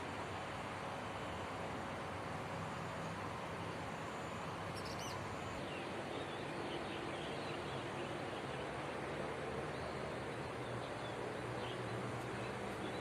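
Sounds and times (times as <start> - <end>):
bird chirps: 4.8 - 5.2.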